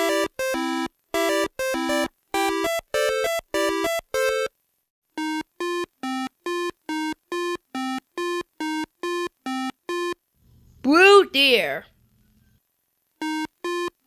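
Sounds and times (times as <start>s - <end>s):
chiptune music with beeping notes: 0.0s - 4.5s, 5.2s - 10.2s, 13.2s - 14.0s.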